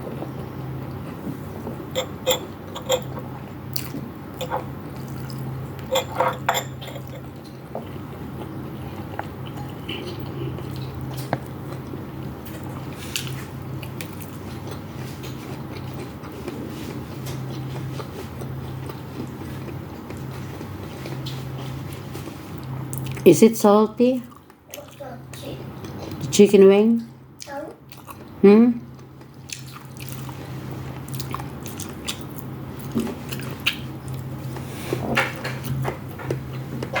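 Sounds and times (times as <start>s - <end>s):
steady low hum: 0.0s - 37.0s
chewing with mouth clicks: 2.0s - 6.1s, 6.9s - 23.2s, 24.2s - 25.0s, 25.8s - 26.2s, 27.9s - 37.0s
person chewing and biting: 29.0s - 34.3s.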